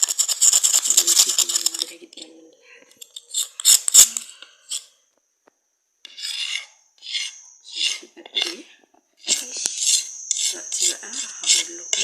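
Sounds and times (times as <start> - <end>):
cuttlebone being scraped: 0.0 - 2.0, 3.0 - 4.9, 6.0 - 8.6, 9.2 - 12.0.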